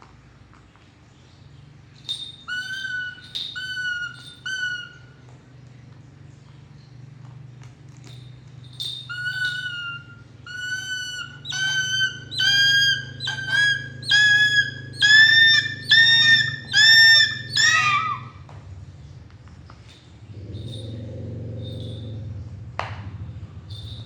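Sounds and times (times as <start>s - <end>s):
eagle screaming: 9.1s - 18.4s.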